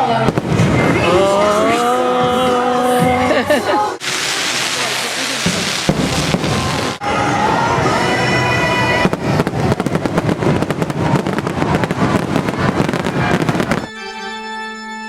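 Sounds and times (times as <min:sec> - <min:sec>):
fireworks crackling: 0:03.3 - 0:13.9
sustained organ chords: 0:13.9 - 0:15.0.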